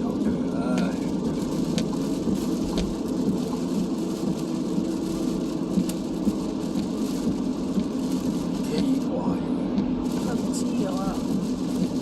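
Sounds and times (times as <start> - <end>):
rain hiss and spray: 0.0 - 12.0.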